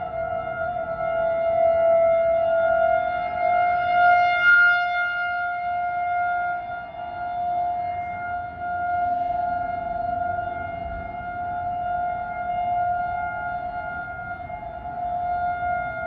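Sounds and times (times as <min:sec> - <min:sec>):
loud steady alarm tone: 0:00.0 - 0:16.0.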